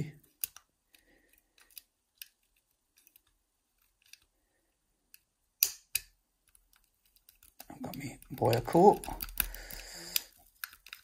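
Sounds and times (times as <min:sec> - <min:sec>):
lock picks clicking in a lock: 0:05.6 - 0:11.0.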